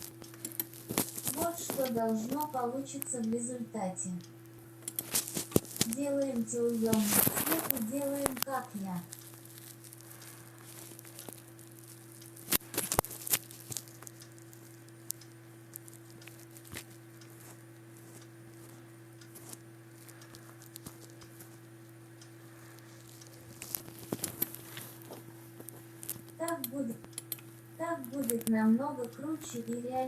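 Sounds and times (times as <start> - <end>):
sharp clicks and taps: 0.0 - 3.2, 4.2 - 9.4, 26.0 - 30.0
low electrical hum: 0.0 - 30.0.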